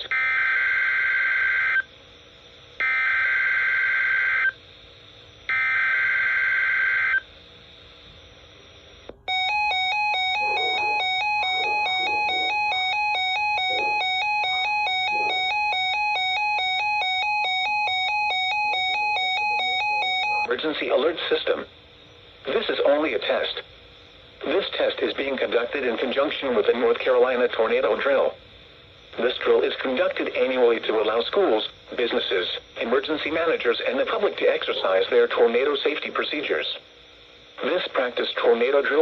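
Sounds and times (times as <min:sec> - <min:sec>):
alternating electronic beeping: 0:08.9 - 0:20.5
warbling digital data tones: 0:09.3 - 0:20.6.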